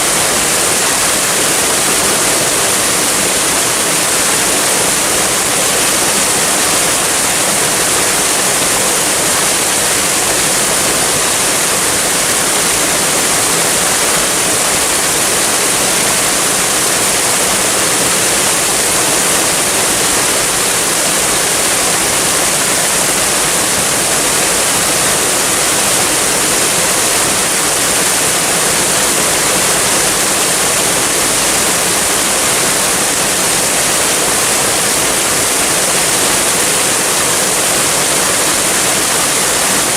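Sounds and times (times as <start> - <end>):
waterfall rushing: 0.0 - 39.9.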